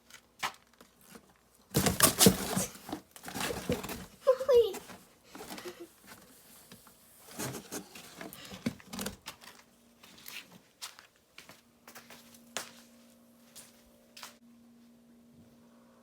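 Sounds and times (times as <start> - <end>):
small things being handled: 0.0 - 11.1.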